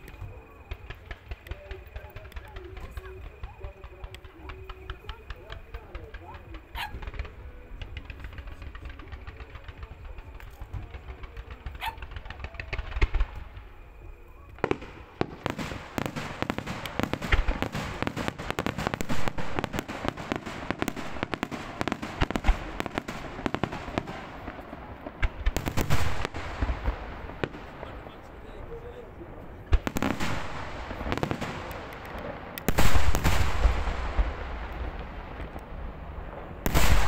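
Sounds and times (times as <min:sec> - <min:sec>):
fireworks bangs and crackles: 0:00.0 - 0:37.0.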